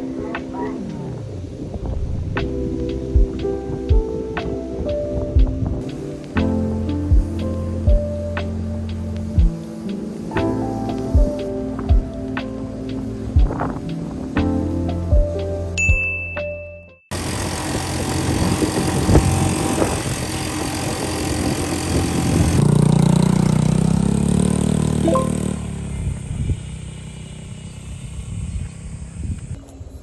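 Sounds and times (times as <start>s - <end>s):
background music: 0.0s - 16.9s, 25.0s - 25.7s.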